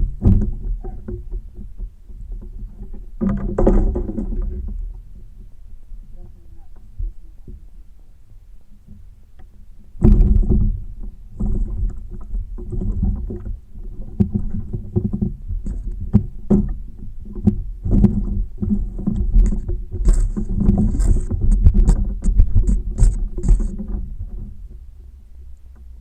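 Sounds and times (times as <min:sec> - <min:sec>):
thumping against plastic kayak hull: 0:00.0 - 0:04.8, 0:10.0 - 0:24.6.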